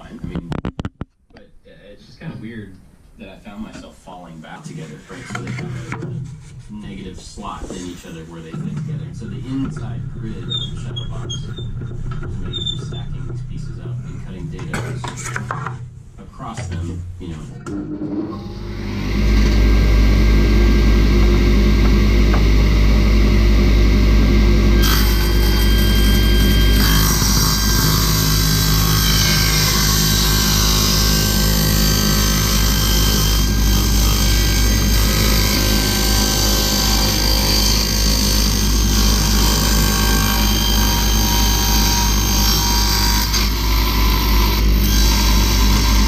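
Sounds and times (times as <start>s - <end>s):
power tool motor humming: 18.3s - 46.0s.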